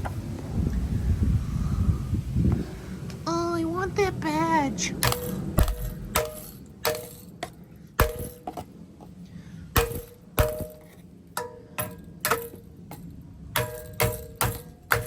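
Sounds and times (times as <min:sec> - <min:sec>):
sharp resonant knocks: 0:05.0 - 0:08.7, 0:09.7 - 0:15.0.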